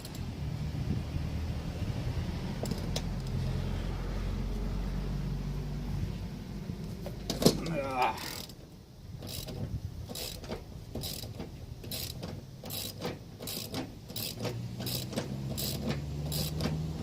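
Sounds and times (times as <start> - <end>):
ratchet wrench clicking: 8.3 - 8.6, 9.2 - 17.0.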